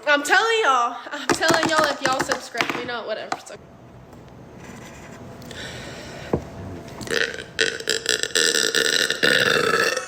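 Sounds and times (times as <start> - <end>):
woman burping: 7.0 - 10.0.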